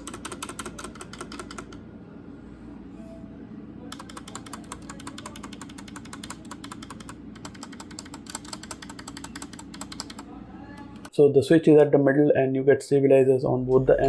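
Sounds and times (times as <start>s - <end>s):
keyboard keys clicking and rattling: 0.0s - 1.8s, 3.9s - 11.1s.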